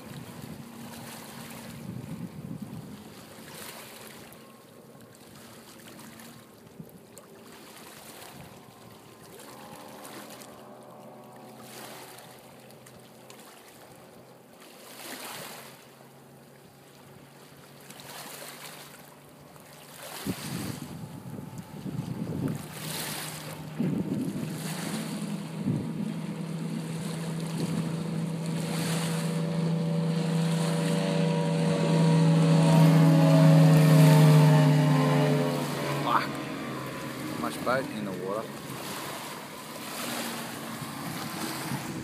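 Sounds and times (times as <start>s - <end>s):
outboard motor running: 0.0s - 42.0s
water splashing along hull: 0.0s - 42.0s.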